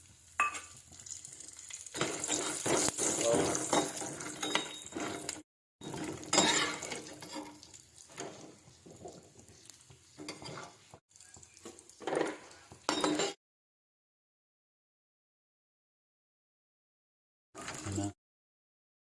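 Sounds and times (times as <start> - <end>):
spatula scraping in a pan: 0.6 - 13.4.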